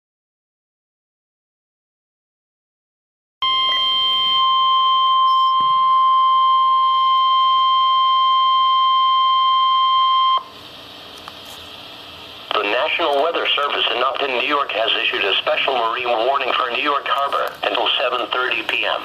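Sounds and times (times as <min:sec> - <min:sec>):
loud steady alarm beep: 0:03.4 - 0:10.5
faint radio hiss: 0:12.5 - 0:19.0.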